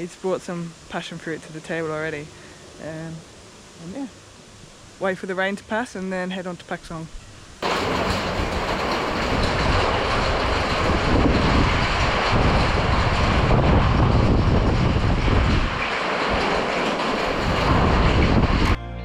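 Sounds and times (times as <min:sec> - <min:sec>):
heavy rain pouring: 0:07.5 - 0:18.8.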